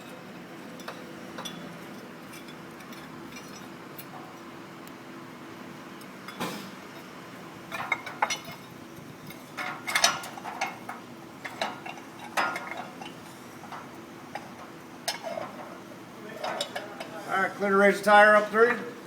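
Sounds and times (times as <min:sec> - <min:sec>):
metal tools clinking: 0:16.4 - 0:17.2.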